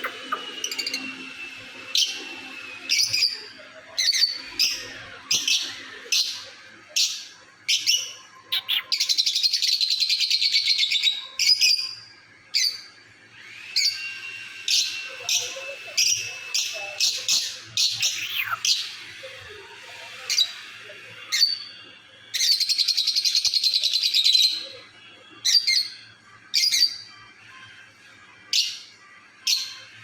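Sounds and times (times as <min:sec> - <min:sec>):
parrot sharp high calls: 0:00.0 - 0:01.1, 0:08.5 - 0:09.8, 0:14.8 - 0:19.0
parrot rattling chatter: 0:14.8 - 0:18.8.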